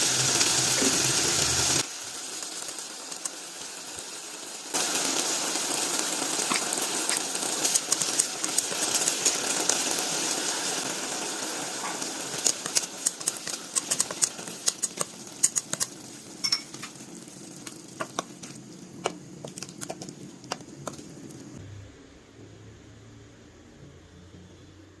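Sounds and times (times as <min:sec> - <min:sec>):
meat sizzling in a pan: 0:00.0 - 0:21.6
spattering fat crackling and popping: 0:01.8 - 0:21.6.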